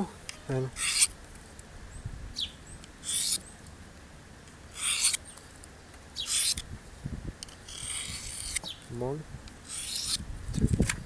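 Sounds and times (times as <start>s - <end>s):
knife rasping on sharpener rod: 0.8s - 1.1s, 3.0s - 3.4s, 4.8s - 5.2s, 6.3s - 6.6s, 7.6s - 8.7s, 9.6s - 10.2s
wind rumble on microphone: 1.9s - 2.5s, 6.6s - 8.3s, 10.1s - 11.0s.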